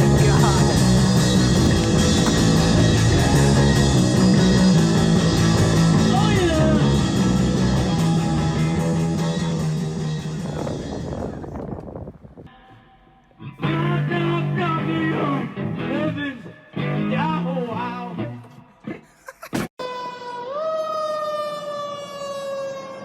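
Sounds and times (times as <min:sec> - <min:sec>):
rock band playing: 0:00.0 - 0:10.5.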